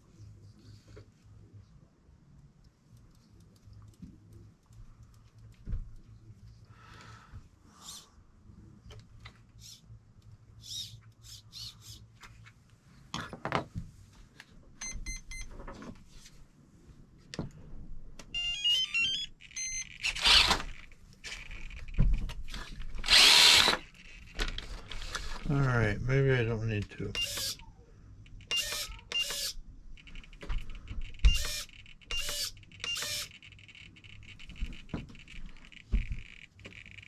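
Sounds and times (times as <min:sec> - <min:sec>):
small electric motor whirring: 0:20.0 - 0:20.8, 0:23.0 - 0:23.8, 0:27.2 - 0:27.6, 0:28.4 - 0:29.6, 0:31.3 - 0:33.6.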